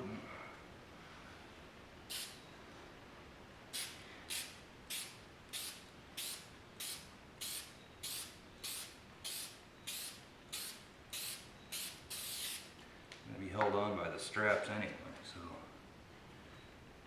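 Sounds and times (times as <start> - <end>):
aerosol spray bursts: 2.1 - 2.4, 3.7 - 12.7.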